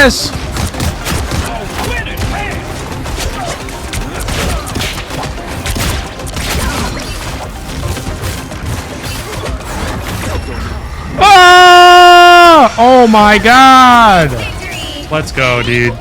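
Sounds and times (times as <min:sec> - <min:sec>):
video game music: 0:00.0 - 0:16.0
gunfire: 0:00.3 - 0:10.4.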